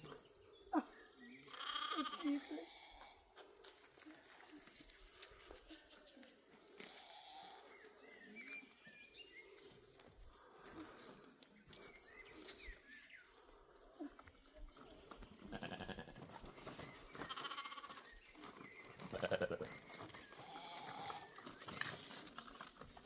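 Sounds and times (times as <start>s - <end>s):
goats bleating: 1.5s - 3.1s, 15.5s - 16.2s, 17.3s - 17.9s, 19.2s - 19.7s.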